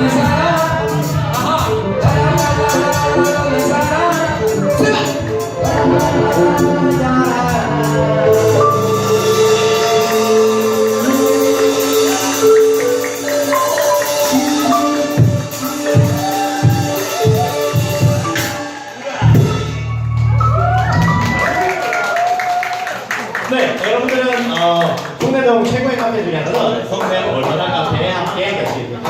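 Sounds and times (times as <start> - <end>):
xylophone melody: 0.0 - 21.2
rapid shaker rhythm: 8.4 - 19.4.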